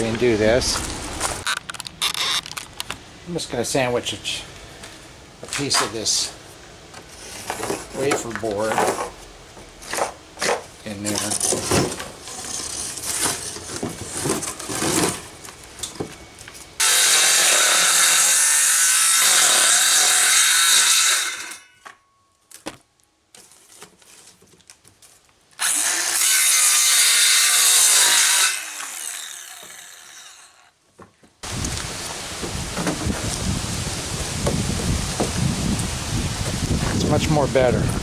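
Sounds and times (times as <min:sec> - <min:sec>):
power tool cutting board: 0:16.8 - 0:21.6, 0:25.6 - 0:30.6.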